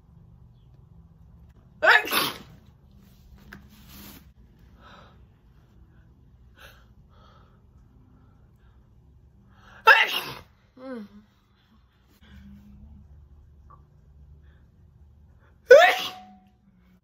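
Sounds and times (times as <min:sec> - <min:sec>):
woman sneezing: 0:01.8 - 0:02.5, 0:09.8 - 0:10.5, 0:15.7 - 0:16.4
quiet breathy sounds: 0:04.3 - 0:09.8, 0:10.5 - 0:15.6.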